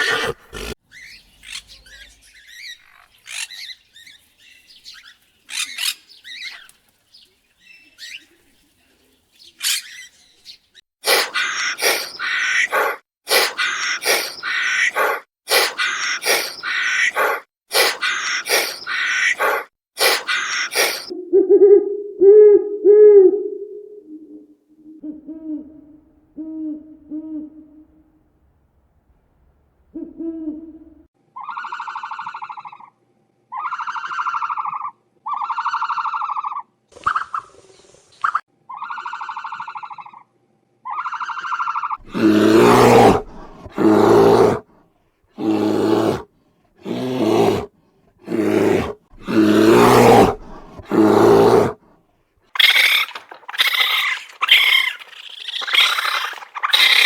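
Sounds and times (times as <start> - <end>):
loud harsh animal calls: 0.0 - 3.6, 11.0 - 21.1, 38.7 - 40.2, 40.8 - 44.6, 48.3 - 51.8, 52.6 - 57.0
quick high-pitched animal calls: 11.0 - 21.1, 52.6 - 57.0
mid-pitched animal calls: 11.0 - 24.4, 31.4 - 32.9, 38.7 - 44.6, 52.6 - 57.0
low soft hoots: 11.1 - 28.2, 29.9 - 32.9, 48.3 - 51.8.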